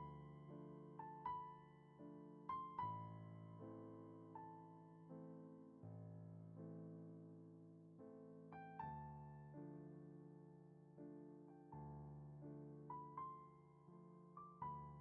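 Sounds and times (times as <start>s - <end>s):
soft piano music: 0.0s - 15.0s.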